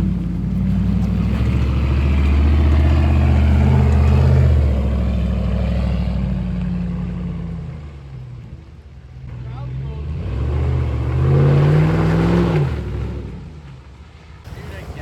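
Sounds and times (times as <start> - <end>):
truck engine revving hard: 0.0 - 7.5, 9.3 - 13.6.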